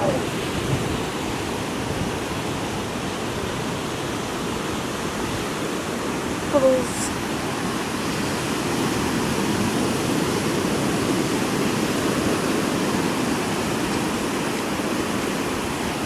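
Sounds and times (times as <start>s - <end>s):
ocean surf washing onto beach: 0.0s - 16.0s.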